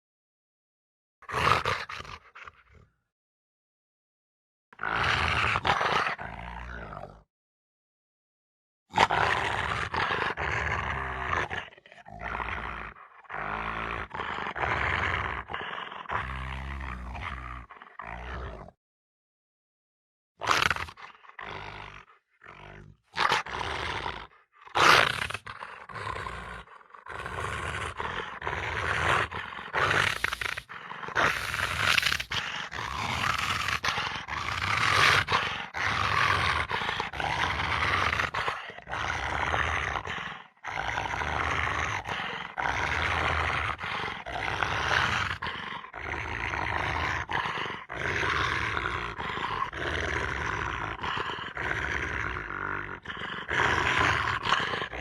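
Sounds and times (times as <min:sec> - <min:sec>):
creature roaring and growling: 0:20.4 - 0:55.0.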